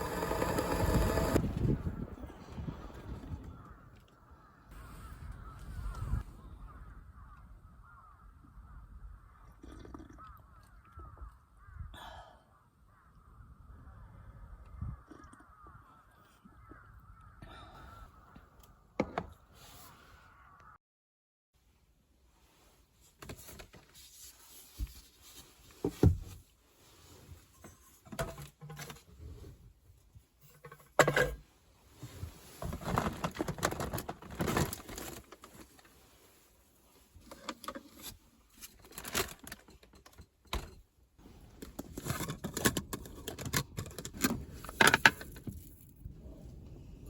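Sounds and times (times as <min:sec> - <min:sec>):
rustling and crinkling: 0:22.3 - 0:29.6, 0:30.4 - 0:40.4.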